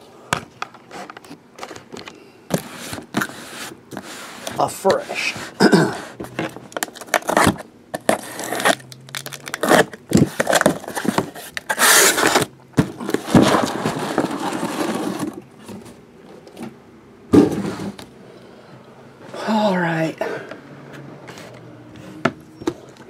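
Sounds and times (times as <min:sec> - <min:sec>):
packaging rustling and tearing: 0:06.4 - 0:15.5.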